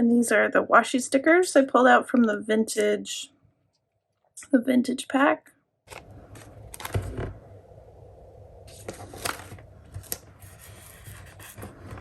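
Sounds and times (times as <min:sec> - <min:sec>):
paper rustling: 0:05.9 - 0:07.3, 0:08.6 - 0:12.0.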